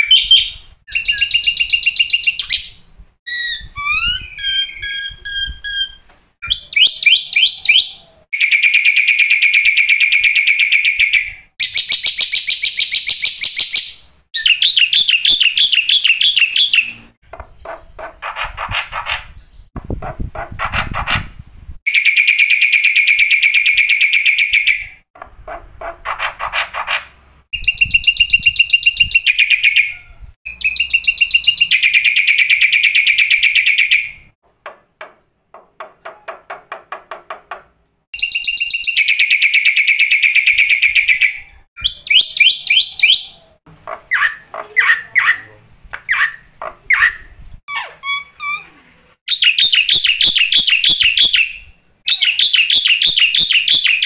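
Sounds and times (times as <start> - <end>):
bird singing rasping phrases: 0.0 - 19.9, 27.5 - 34.3, 38.2 - 48.7, 49.3 - 54.0.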